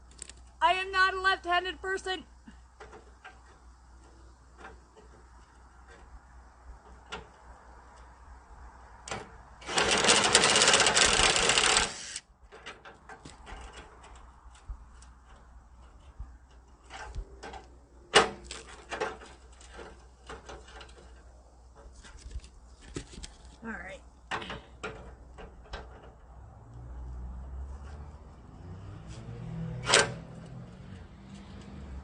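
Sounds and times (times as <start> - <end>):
rapid mechanical tool chatter: 9.6 - 12.2.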